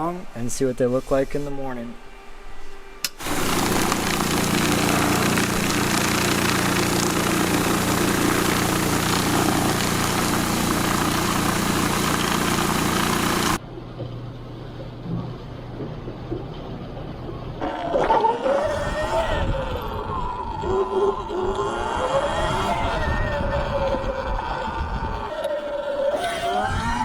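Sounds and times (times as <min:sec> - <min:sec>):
motor humming: 0:03.1 - 0:13.6.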